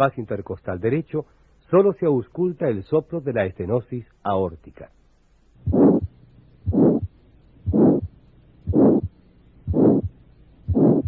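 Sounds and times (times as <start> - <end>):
heart murmur through stethoscope: 5.7 - 11.0.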